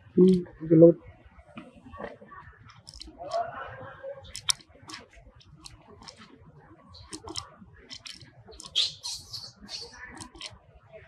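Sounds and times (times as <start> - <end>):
crisp clicks and crunches: 4.3 - 6.3, 7.1 - 8.8.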